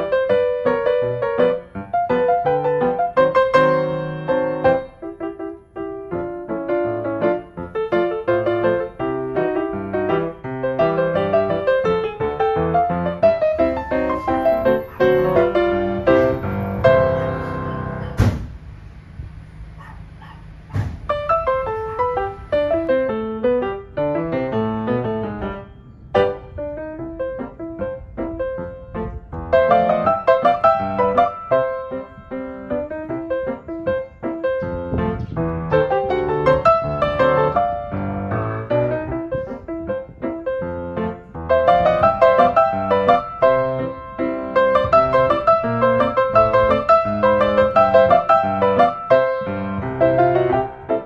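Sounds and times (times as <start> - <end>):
piano music: 0.0 - 18.4, 21.0 - 51.0
sharp knock: 18.0 - 18.6, 20.7 - 21.2.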